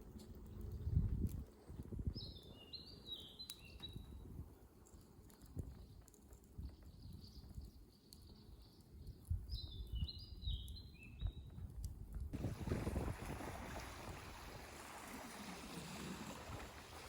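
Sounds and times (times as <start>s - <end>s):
wind noise: 0.0s - 2.4s, 9.0s - 17.0s.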